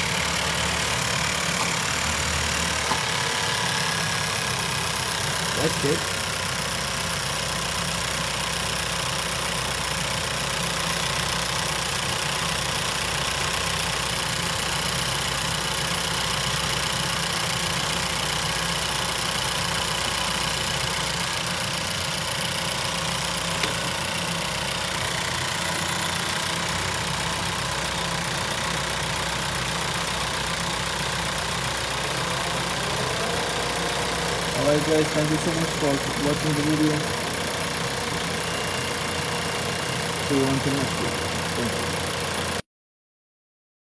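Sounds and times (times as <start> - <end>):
car engine idling: 0.0 - 42.6.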